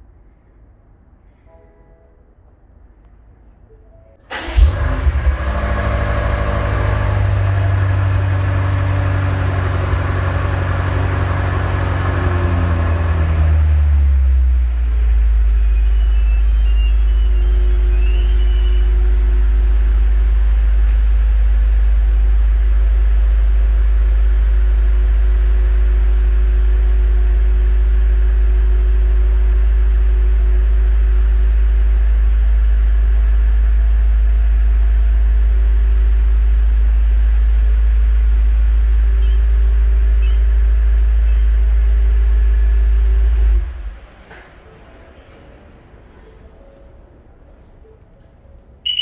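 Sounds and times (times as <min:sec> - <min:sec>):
car engine idling: 0:04.3 - 0:44.7.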